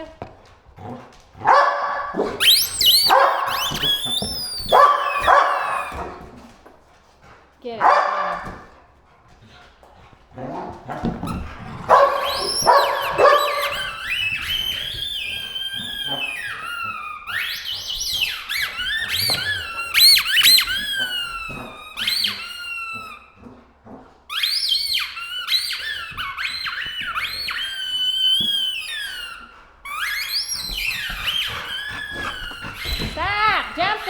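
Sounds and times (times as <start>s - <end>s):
squeaky toy squealing: 2.4s - 6.0s, 11.2s - 23.3s, 24.3s - 34.0s.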